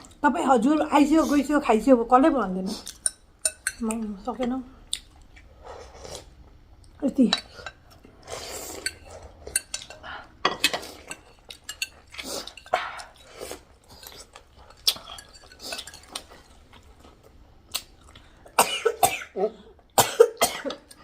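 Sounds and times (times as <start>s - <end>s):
spoons clinking on bowls: 8.8s - 12.7s
person coughing: 18.6s - 20.9s.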